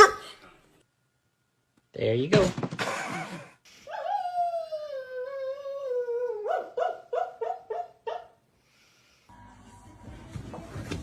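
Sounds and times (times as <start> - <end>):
dog yipping: 6.4 - 8.4.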